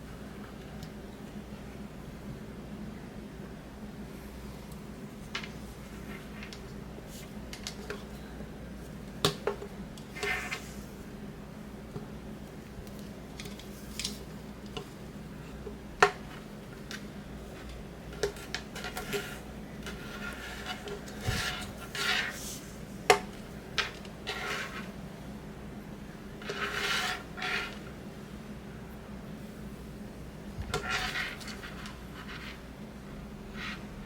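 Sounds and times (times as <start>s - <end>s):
rubbing and rustling: 16.2s - 25.0s, 26.4s - 27.9s, 30.5s - 32.7s.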